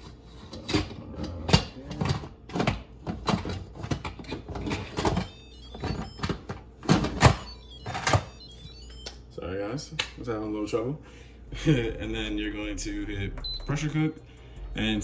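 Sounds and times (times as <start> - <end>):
background music: 11.5 - 15.0.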